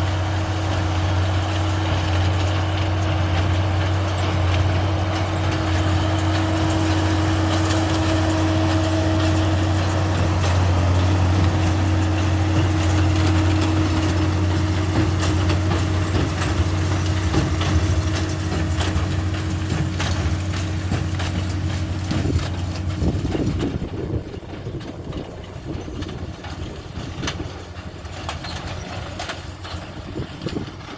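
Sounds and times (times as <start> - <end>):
tractor engine drone: 0.0 - 30.9.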